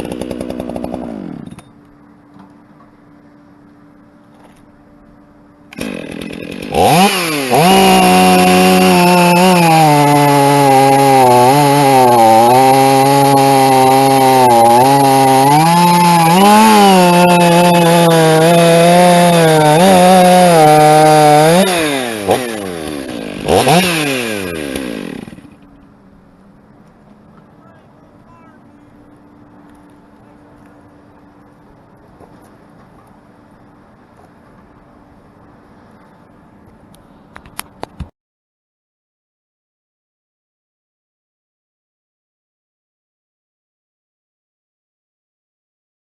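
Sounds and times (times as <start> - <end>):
chainsaw cutting log: 0.0 - 1.7, 5.7 - 25.7.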